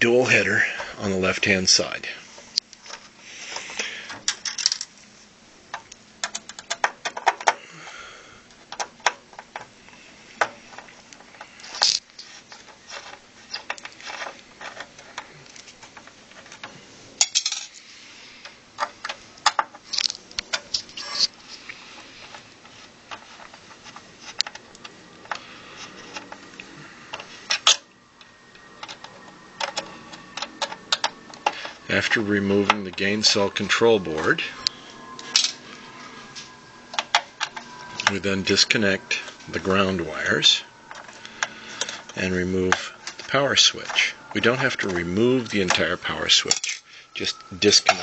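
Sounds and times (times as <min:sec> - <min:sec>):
screws clinking against metal: 0:41.8 - 0:48.0.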